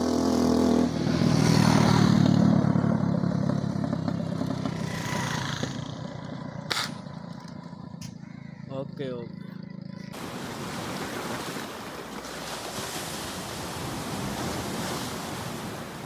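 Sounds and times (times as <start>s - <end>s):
vehicle engine pulling away: 0.0s - 8.0s.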